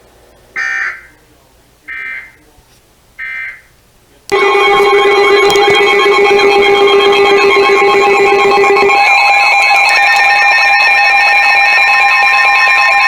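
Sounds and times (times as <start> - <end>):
digital data tone bursts: 4.3 - 13.0
loud steady alarm tone: 4.3 - 13.0.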